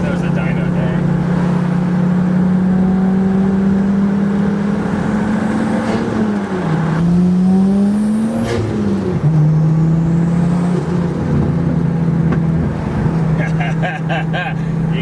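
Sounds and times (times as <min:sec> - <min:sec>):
turbocharged car engine accelerating: 0:00.0 - 0:15.0.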